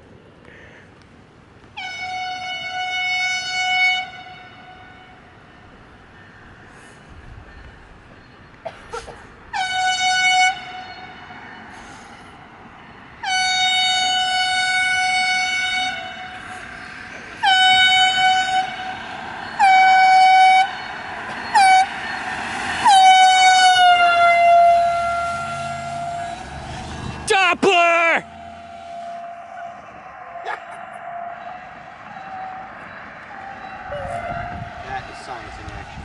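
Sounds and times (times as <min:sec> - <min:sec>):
passing vehicle noise: 0:00.0 - 0:36.0
air horn blasts: 0:01.8 - 0:05.2, 0:09.5 - 0:11.3, 0:13.2 - 0:16.7, 0:17.4 - 0:19.0, 0:19.6 - 0:20.8, 0:22.8 - 0:26.5, 0:27.3 - 0:31.7, 0:33.8 - 0:35.6.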